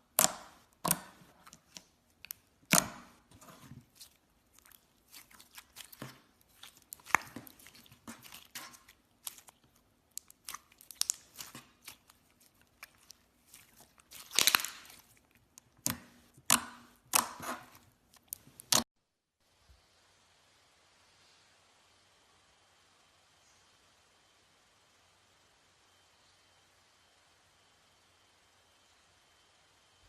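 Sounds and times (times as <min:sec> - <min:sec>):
slime squished with clicks and pops: 0:00.1 - 0:03.2, 0:03.9 - 0:18.8.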